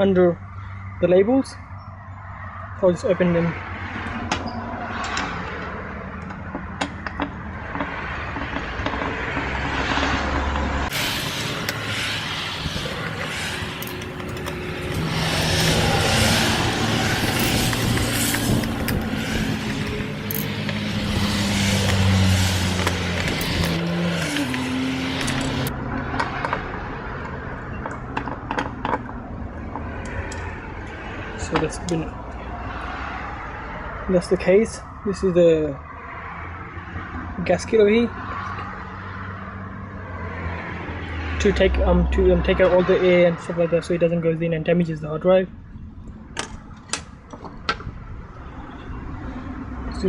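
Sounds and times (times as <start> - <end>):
traffic noise: 0.0 - 50.0
car passing: 2.1 - 35.1, 35.7 - 44.2
car passing close by: 8.0 - 26.9
metallic clicks of screws and case: 12.7 - 16.4, 17.1 - 20.9, 22.8 - 26.6
screwdriver metal clicks: 13.0 - 16.4.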